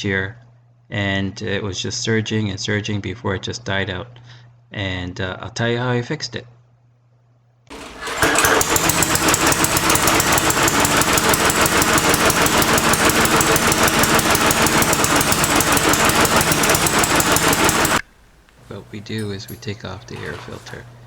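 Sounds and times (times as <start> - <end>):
lawnmower engine sputtering: 7.7 - 21.0.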